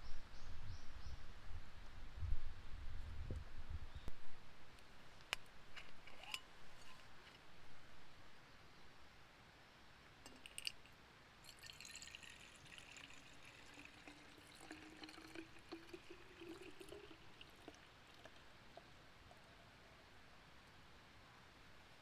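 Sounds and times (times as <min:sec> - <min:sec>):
liquid pouring into container: 0:10.3 - 0:19.4.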